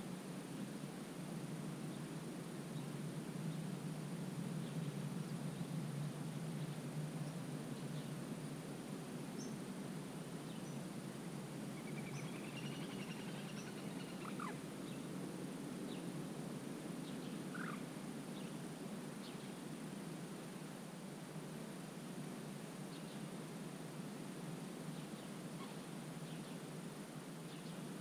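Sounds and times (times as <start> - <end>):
faint bird calls: 11.8 - 15.1, 17.1 - 18.5, 25.0 - 26.6
sharp bird calls: 11.9 - 14.6, 17.5 - 17.8
bird trill: 17.5 - 17.8.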